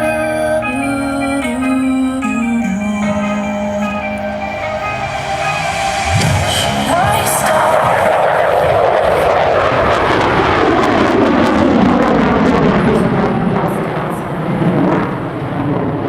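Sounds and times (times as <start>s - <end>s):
jet fighter flying past: 3.6s - 16.0s.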